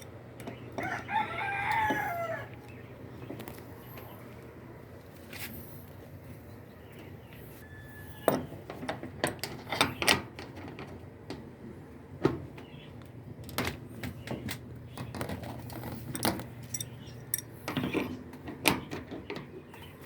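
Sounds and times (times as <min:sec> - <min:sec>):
hard objects clicking and knocking: 0:15.0 - 0:18.9.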